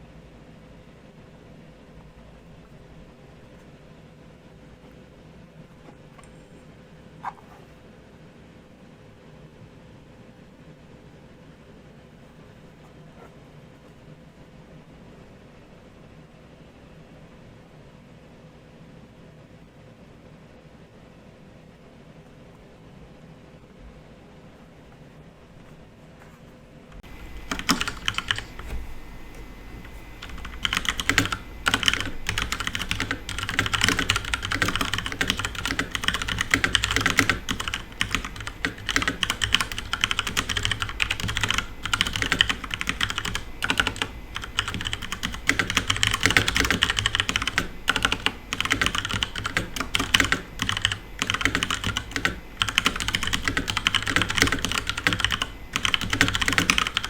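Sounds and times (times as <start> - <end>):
mechanical keyboard typing: 27.0 - 57.0.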